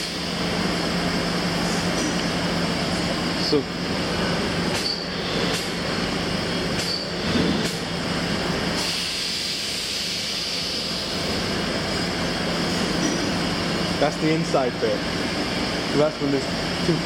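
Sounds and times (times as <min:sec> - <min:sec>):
factory machinery humming: 0:00.0 - 0:17.0
high hiss: 0:08.7 - 0:11.2.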